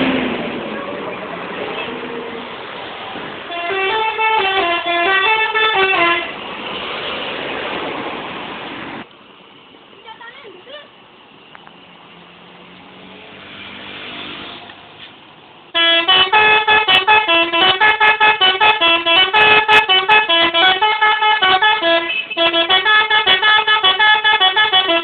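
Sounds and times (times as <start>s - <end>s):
traffic noise: 0.0s - 25.0s
multi-tone musical bus horn: 3.5s - 6.4s, 15.7s - 25.0s.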